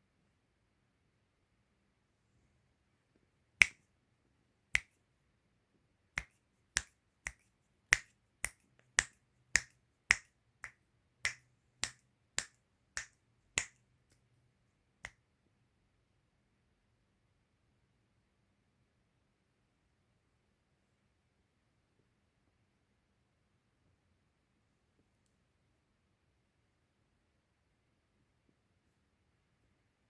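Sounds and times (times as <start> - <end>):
finger snapping: 3.6 - 3.8, 4.7 - 5.0, 6.2 - 14.2.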